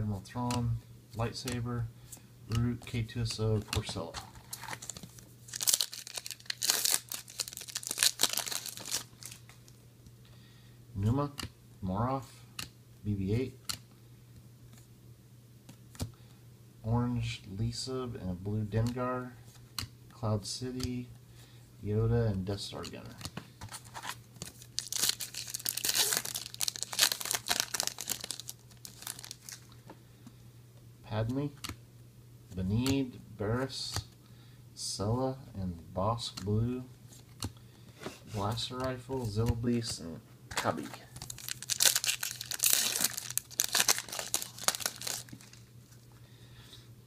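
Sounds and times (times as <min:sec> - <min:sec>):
foil wrapper tearing and crinkling: 0:04.6 - 0:09.5, 0:23.8 - 0:29.7, 0:41.1 - 0:45.6.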